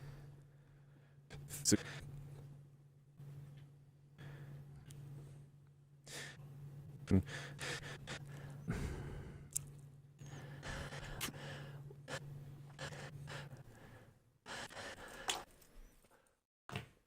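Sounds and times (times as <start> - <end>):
low steady hum: 0.0 - 16.4
man breathing and sighing: 7.1 - 9.6, 10.2 - 16.2.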